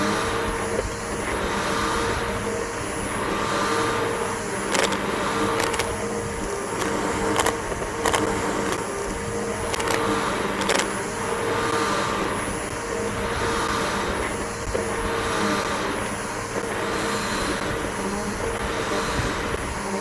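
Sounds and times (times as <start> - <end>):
sharp clicks: 4.6 - 11.0.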